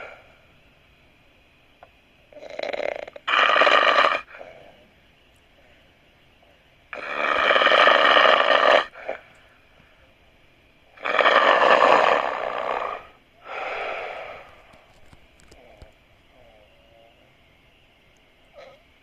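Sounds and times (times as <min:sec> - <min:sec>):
person snoring loudly: 0:11.0 - 0:14.5.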